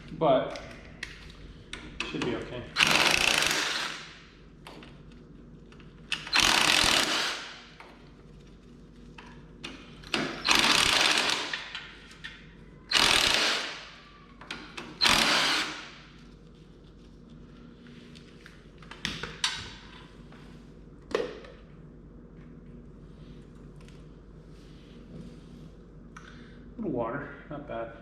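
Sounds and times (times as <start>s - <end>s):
cordless power tool spinning bolts: 2.8s - 4.2s, 6.2s - 7.7s, 10.4s - 11.8s, 12.9s - 13.9s, 15.0s - 16.0s.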